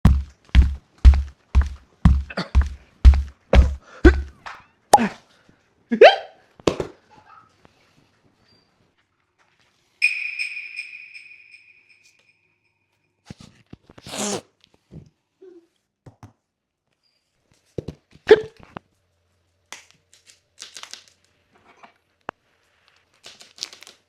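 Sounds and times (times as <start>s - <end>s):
sharp knock: 0.0s - 4.3s.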